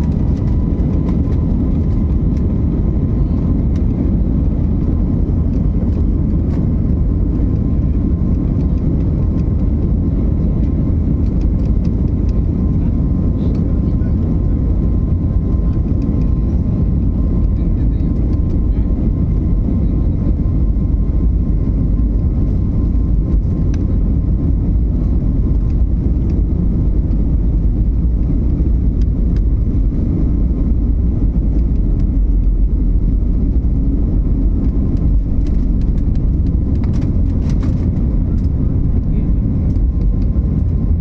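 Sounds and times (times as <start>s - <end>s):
airliner engines rumbling: 0.0s - 41.0s
faint clicks and rattles: 34.6s - 40.9s.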